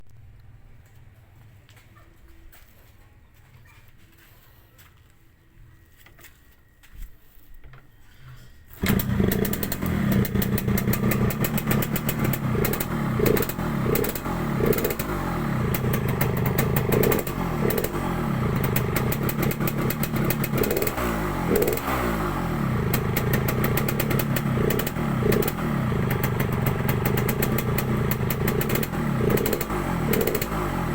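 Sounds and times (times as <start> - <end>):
two-stroke motorcycle engine idling: 8.8 - 30.9.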